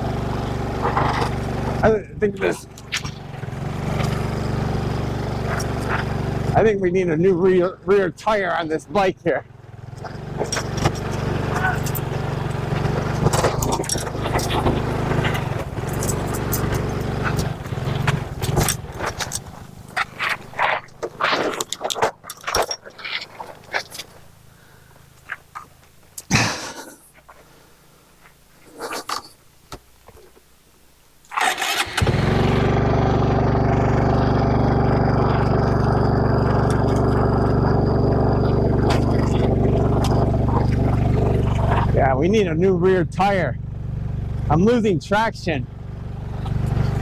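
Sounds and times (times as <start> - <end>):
motorcycle engine running: 0.0 - 25.9, 31.4 - 47.0
clicks and rattles: 10.0 - 24.2.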